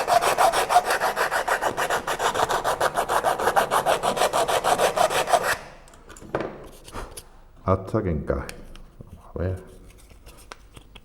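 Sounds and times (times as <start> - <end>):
sandpaper rubbing on plywood: 0.0 - 5.6.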